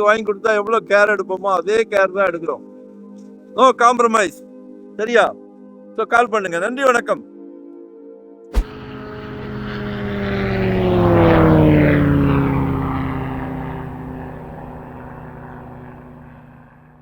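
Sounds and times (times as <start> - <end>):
engine passing by: 8.6 - 17.0.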